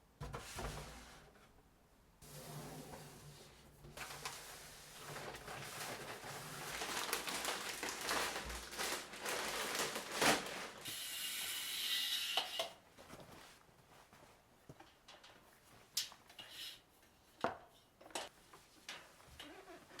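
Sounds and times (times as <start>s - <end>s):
household items clicking and rattling: 5.0s - 10.9s.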